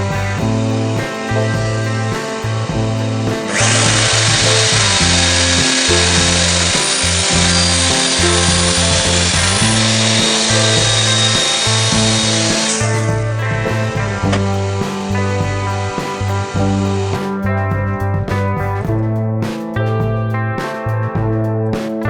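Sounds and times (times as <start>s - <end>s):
rock music: 0.0s - 22.0s
power tool cutting wood: 3.0s - 13.0s.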